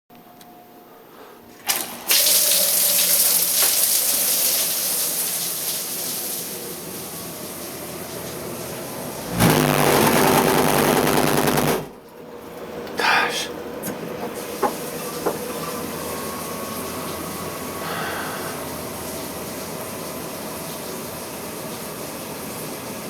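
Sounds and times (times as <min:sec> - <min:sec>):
water rushing through water heater: 0:01.5 - 0:10.9, 0:14.1 - 0:23.0.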